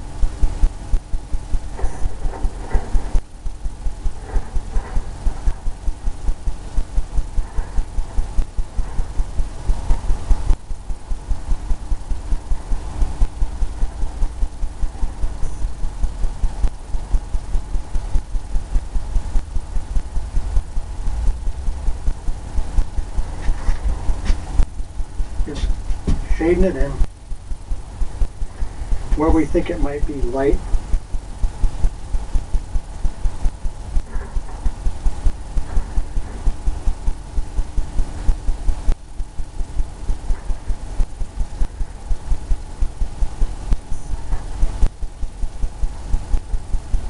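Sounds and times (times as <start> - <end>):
paintbrush thumping on canvas: 25.5 - 26.4.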